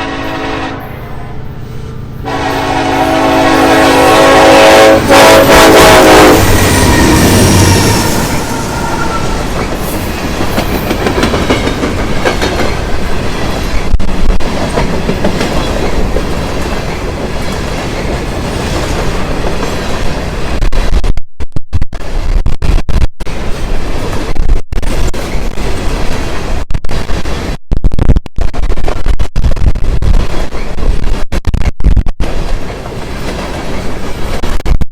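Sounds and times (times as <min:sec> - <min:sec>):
freight train rumbling past: 0:00.0 - 0:20.9, 0:32.2 - 0:34.6
wheels clicking over rail joints: 0:09.4 - 0:20.0.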